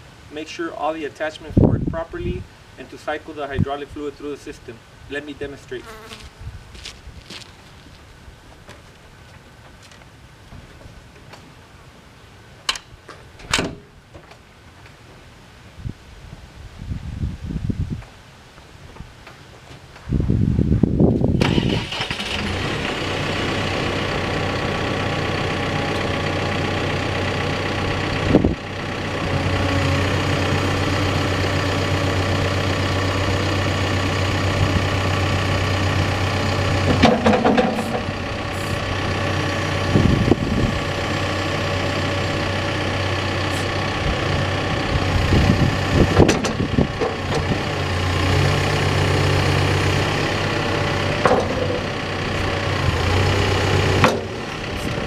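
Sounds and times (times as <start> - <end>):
diesel engine running: 21.4 - 55.0.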